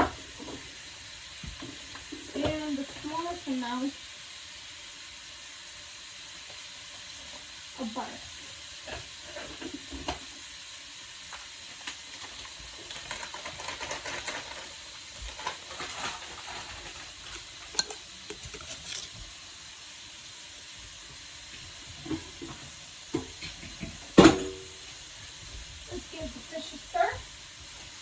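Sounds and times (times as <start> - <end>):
fish sizzling in a pan: 0.0 - 28.0
utensil scraping and clinking: 15.4 - 19.3.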